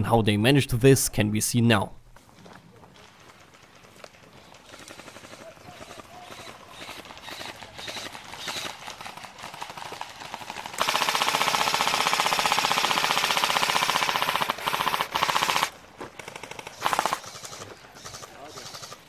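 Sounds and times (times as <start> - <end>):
airsoft gun firing full-auto: 4.5 - 19.0
quieter rattling shots: 4.5 - 19.0.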